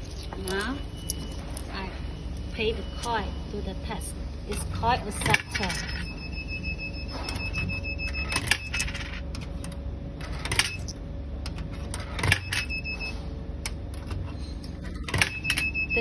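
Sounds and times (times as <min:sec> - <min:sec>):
faint high machine whine: 0:00.0 - 0:16.0
coins clinking into coin acceptor: 0:08.1 - 0:09.3.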